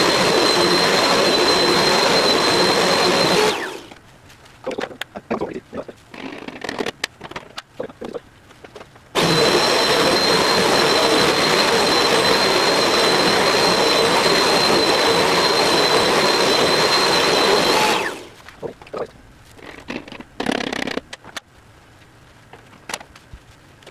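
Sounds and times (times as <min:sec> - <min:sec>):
vacuum cleaner running: 0:00.0 - 0:04.0, 0:09.2 - 0:18.4.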